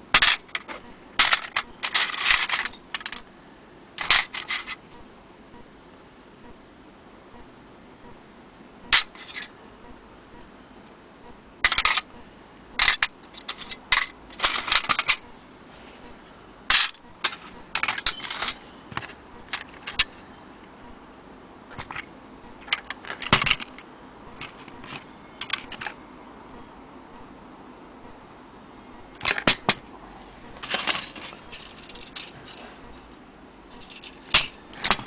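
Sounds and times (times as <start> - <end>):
metallic clicks and clinks: 0.2 - 3.3, 12.8 - 15.3, 16.7 - 20.2, 30.6 - 35.0.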